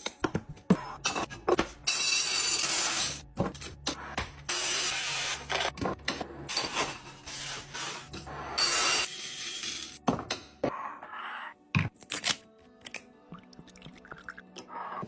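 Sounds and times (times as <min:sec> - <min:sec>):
items rubbed and scraped by hand: 0:00.7 - 0:09.1.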